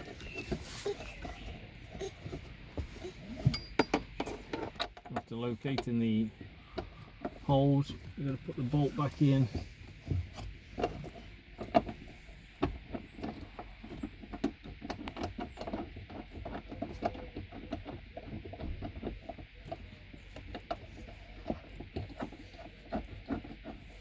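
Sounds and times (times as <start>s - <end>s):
small metal clicks and knocks: 3.4s - 7.5s, 10.3s - 24.0s.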